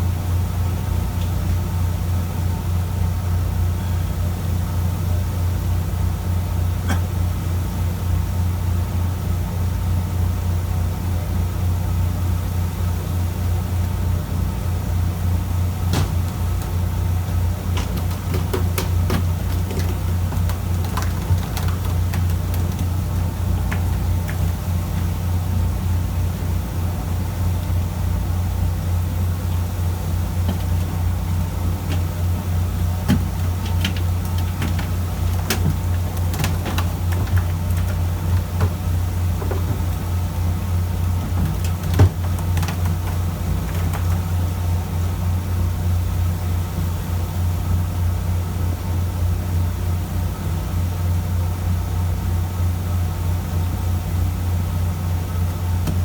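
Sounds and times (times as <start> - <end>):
sharp knocks and clicks: 15.9 - 25.1, 33.0 - 40.2, 41.2 - 44.4.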